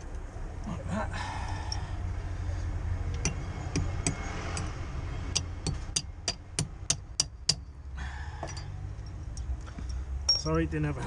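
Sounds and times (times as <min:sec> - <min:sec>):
metal anchor sleeve tapping: 0:08.4 - 0:10.5.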